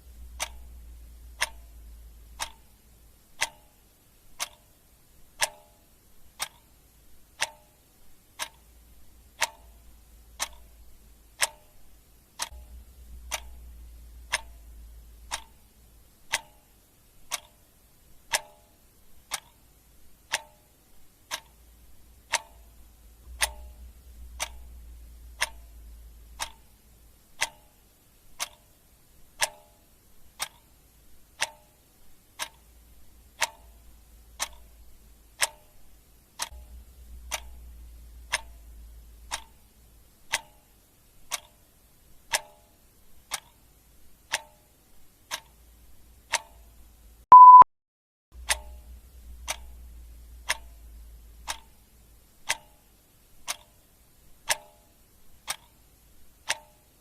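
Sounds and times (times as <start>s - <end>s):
faint low rumble: 0.0s - 28.4s, 30.2s - 42.2s, 48.4s - 52.6s
clock ticking: 0.0s - 47.6s, 48.4s - 57.0s.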